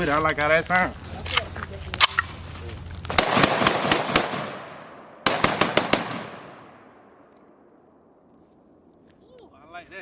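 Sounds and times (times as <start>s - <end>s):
gunshot echo: 3.1s - 7.2s
rapid gunshots: 3.2s - 6.8s.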